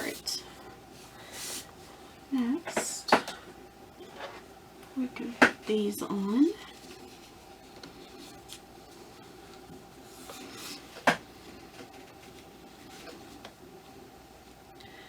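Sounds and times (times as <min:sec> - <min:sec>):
faint rubbing and handling: 0:00.0 - 0:02.2, 0:04.0 - 0:14.7.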